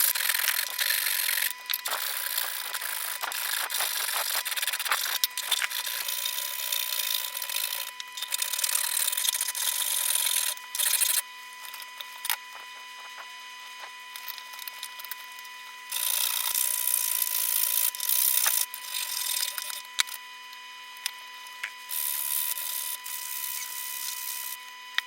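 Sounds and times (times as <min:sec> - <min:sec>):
hand tool rasping: 0:00.0 - 0:13.3.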